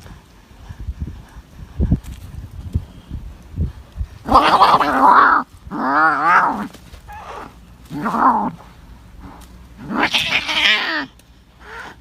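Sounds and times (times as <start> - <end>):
cats yowling: 4.3 - 7.4, 9.8 - 11.8.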